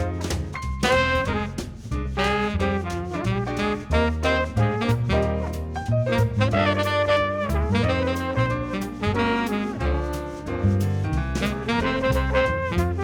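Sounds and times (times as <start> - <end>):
upbeat jazz music: 0.0 - 13.0.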